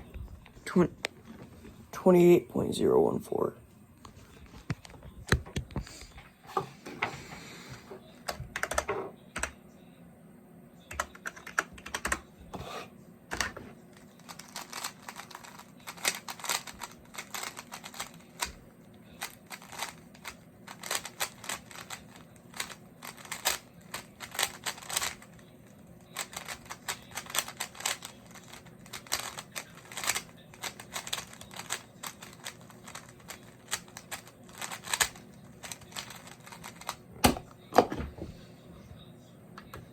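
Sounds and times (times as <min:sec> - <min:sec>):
puzzle cube clicking: 0:19.2 - 0:25.2, 0:26.2 - 0:37.4.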